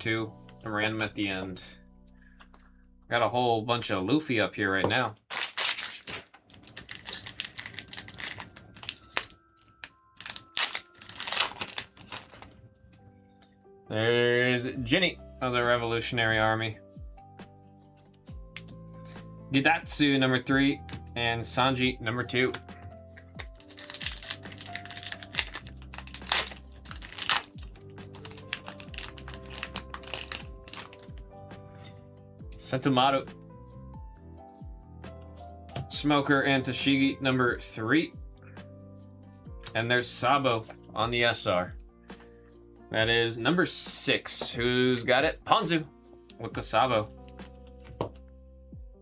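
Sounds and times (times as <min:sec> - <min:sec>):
cards and wrappers rustling: 0:05.3 - 0:12.7, 0:23.2 - 0:31.4, 0:47.0 - 0:48.1.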